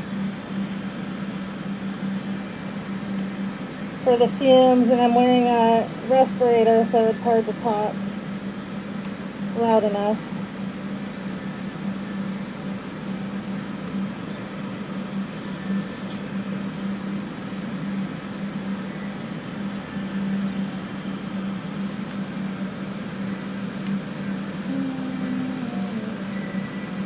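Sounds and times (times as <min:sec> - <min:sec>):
fans humming: 0:00.0 - 0:27.0
brief high hiss: 0:15.4 - 0:16.2.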